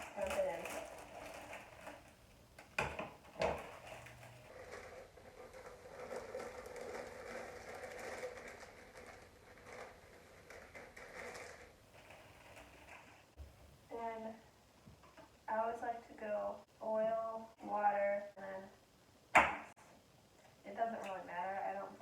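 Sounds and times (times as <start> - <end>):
sharp knocks: 19.3 - 19.7.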